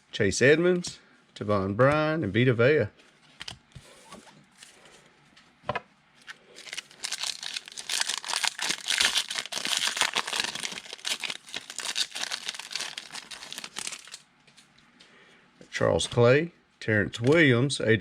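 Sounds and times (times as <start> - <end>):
wrapper tearing and crinkling: 6.6 - 14.2.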